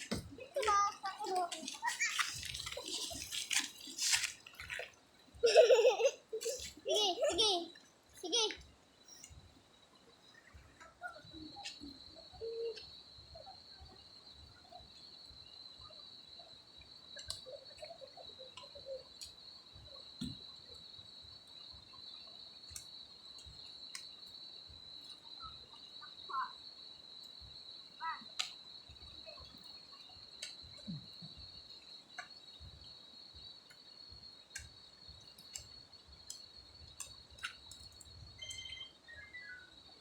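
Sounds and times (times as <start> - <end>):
high-pitched insect trilling: 33.5 - 40.0.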